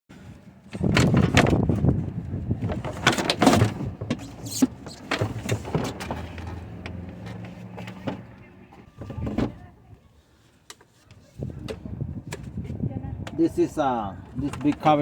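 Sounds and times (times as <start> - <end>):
plastic panels clattering and knocking: 0.8 - 1.9, 2.6 - 8.3.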